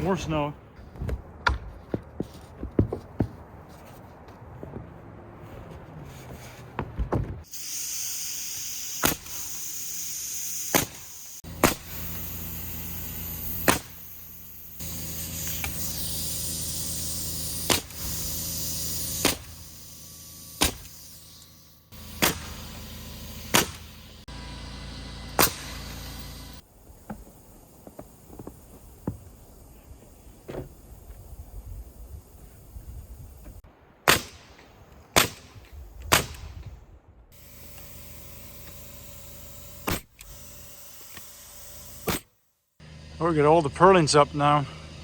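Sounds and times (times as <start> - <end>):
nail gun shots into wood: 9.0 - 9.4, 10.7 - 12.0, 13.6 - 14.0, 17.6 - 18.0, 19.2 - 19.6, 20.6 - 21.0, 22.2 - 22.7, 23.5 - 23.9, 25.4 - 25.8, 34.1 - 34.5, 35.2 - 36.6, 39.8 - 40.3, 42.0 - 42.3
motor hum: 22.0 - 29.7, 37.4 - 42.2, 42.8 - 45.0.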